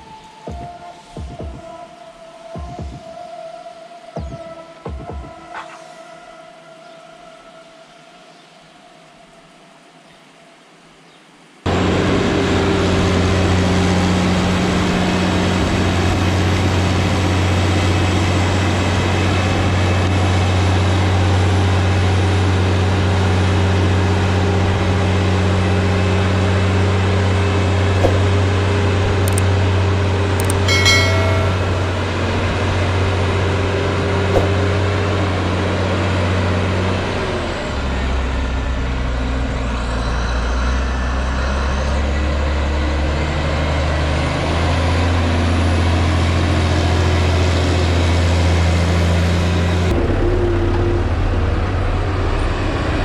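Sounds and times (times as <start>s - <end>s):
farm machine engine running: 11.7s - 36.9s.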